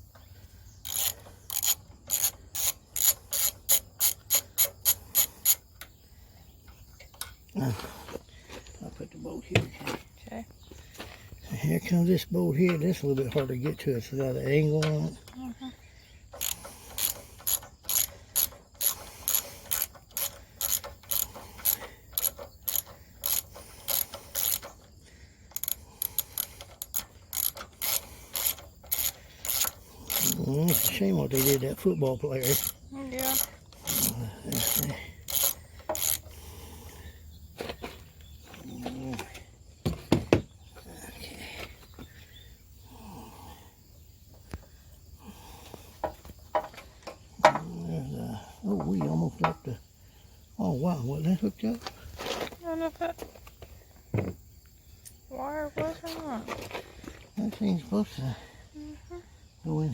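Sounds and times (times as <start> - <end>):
ratchet wrench clicking: 0.8 - 5.6, 16.3 - 24.9, 25.5 - 31.8, 32.4 - 36.3.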